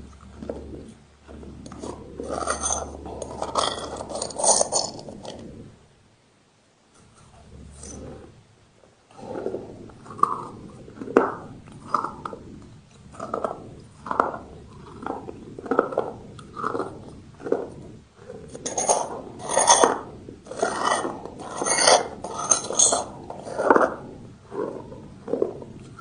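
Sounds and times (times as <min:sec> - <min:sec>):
chewing crunching brick pieces: 0:00.0 - 0:05.5, 0:09.1 - 0:26.0.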